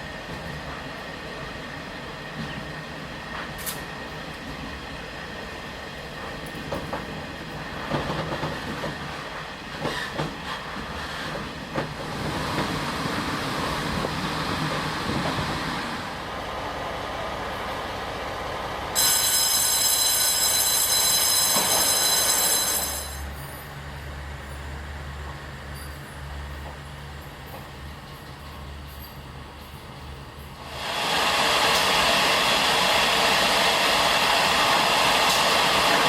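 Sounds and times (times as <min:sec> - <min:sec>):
train running on rails: 0:00.0 - 0:36.0.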